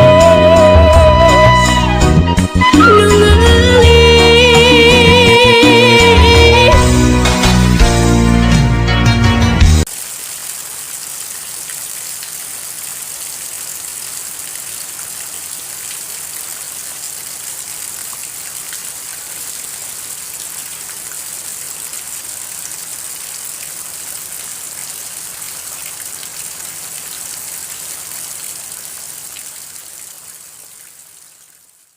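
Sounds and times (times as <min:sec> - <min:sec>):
steady rain hiss: 0:09.8 - 0:31.9.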